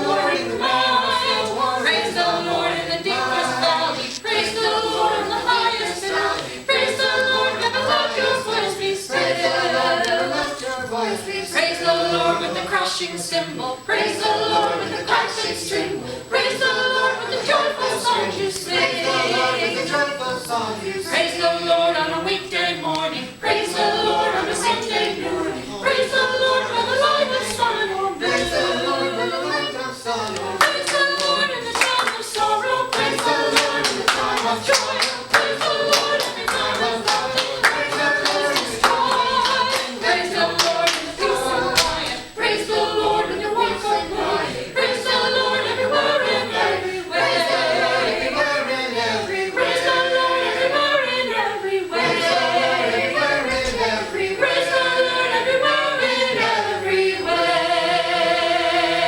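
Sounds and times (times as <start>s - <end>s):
church choir singing: 0.0s - 59.0s
rhythmic hand clapping: 30.2s - 44.3s.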